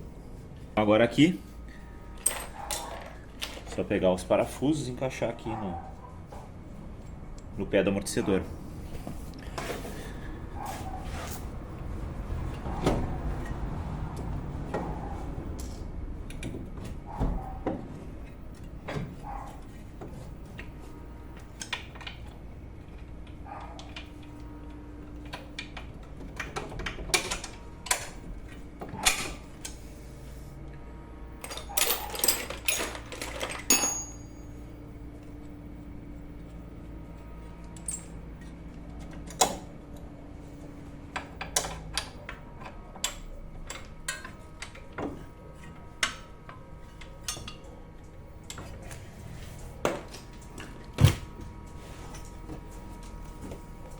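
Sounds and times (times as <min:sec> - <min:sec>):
tools and bolts clinking: 0:02.1 - 0:03.9, 0:31.4 - 0:34.7, 0:37.7 - 0:38.5.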